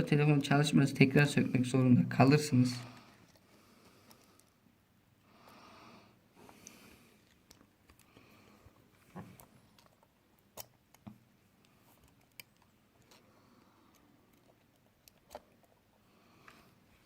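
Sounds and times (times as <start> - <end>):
faint clicks of small parts: 2.7 - 4.6, 6.4 - 17.0.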